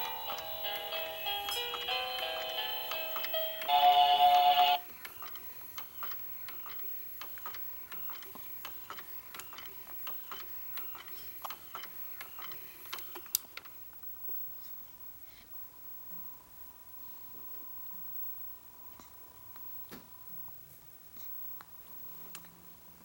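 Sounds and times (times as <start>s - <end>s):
baby swing music chord: 0.0s - 4.8s.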